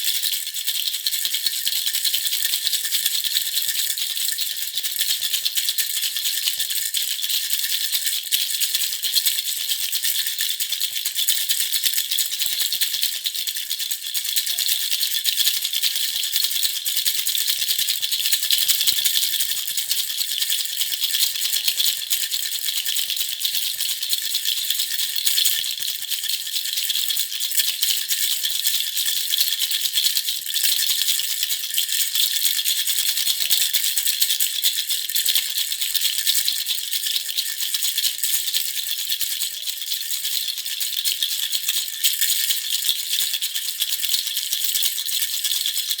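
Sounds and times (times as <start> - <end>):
baby rattle shaking: 0.0 - 46.0.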